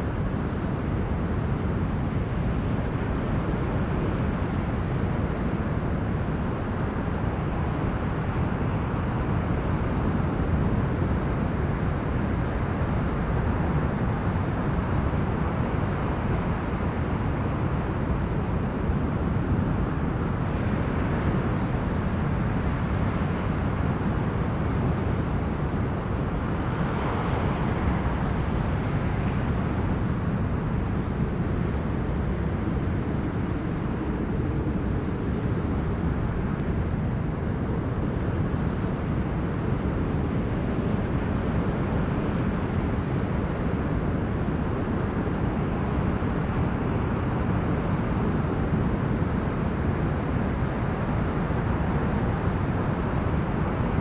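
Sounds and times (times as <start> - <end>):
wind buffeting microphone: 25.2 - 37.0.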